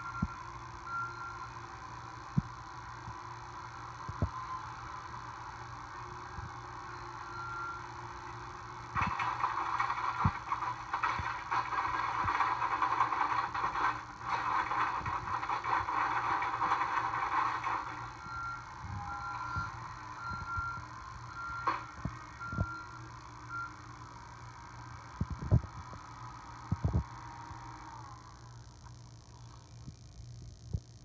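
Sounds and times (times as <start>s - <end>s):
skid steer running: 0.0s - 23.9s
gritty rattling and scraping: 9.0s - 18.1s.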